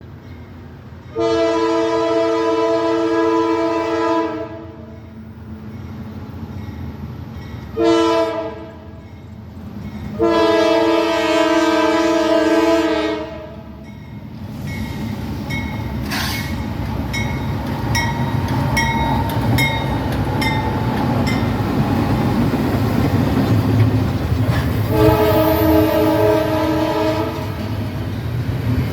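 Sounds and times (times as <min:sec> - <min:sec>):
train rumbling past: 0:00.0 - 0:28.9
locomotive horn blasts: 0:01.1 - 0:05.0, 0:07.8 - 0:09.0, 0:10.1 - 0:13.8, 0:24.8 - 0:27.8.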